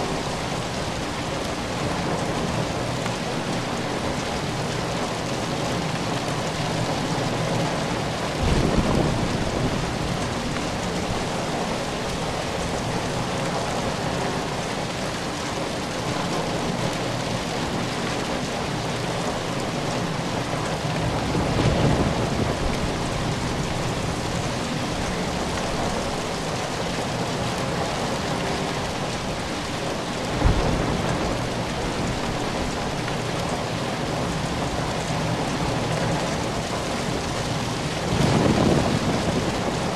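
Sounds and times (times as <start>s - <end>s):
steady rain: 0.0s - 39.9s
thunder rumbling: 6.8s - 14.0s, 20.4s - 39.9s
thunder clap: 8.4s - 11.2s, 30.3s - 32.8s, 38.0s - 39.9s.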